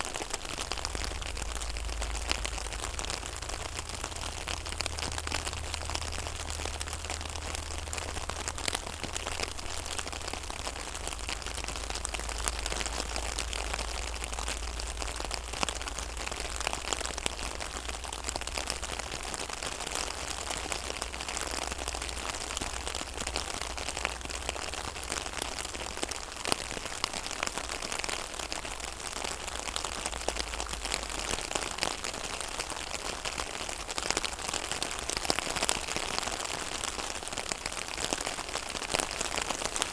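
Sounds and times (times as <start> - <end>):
rain falling on pond water: 0.0 - 39.9
low rumble: 0.6 - 18.6.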